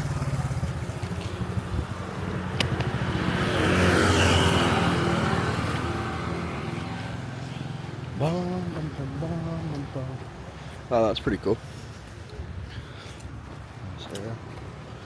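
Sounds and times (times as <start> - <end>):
vehicle engine running: 0.0 - 10.6
vehicle passing by: 0.0 - 10.6.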